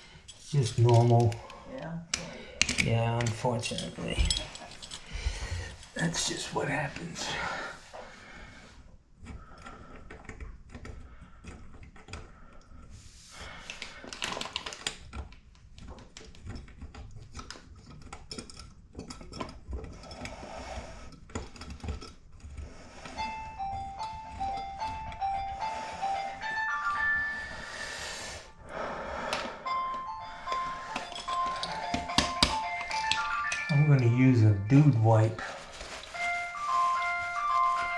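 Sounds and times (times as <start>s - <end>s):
clicks knocks and scraping: 0.2s - 7.2s, 9.2s - 13.0s, 13.6s - 23.4s
simple electronic tune: 31.7s - 35.0s.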